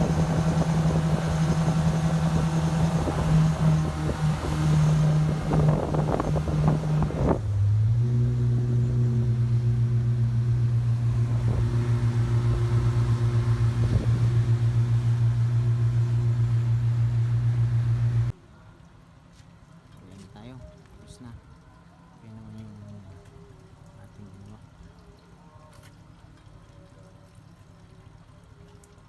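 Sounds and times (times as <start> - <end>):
boat engine pulsing: 0.0 - 18.3.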